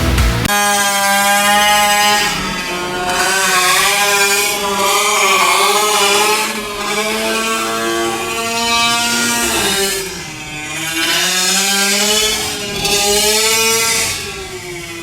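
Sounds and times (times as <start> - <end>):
rock music: 0.0 - 0.5
rc truck gas engine revving: 0.0 - 15.0.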